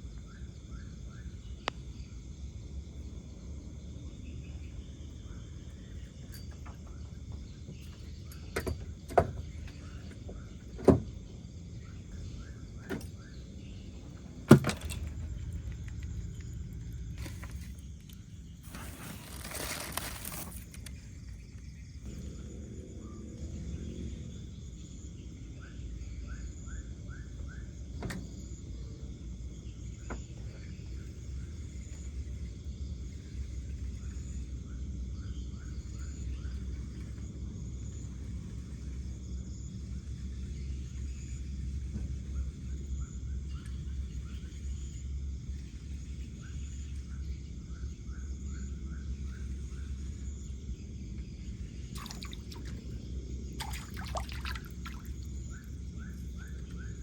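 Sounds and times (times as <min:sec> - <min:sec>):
insects chirping: 0:00.0 - 0:57.0
brief rustling: 0:17.2 - 0:21.0
steady low rumble: 0:21.0 - 0:26.1.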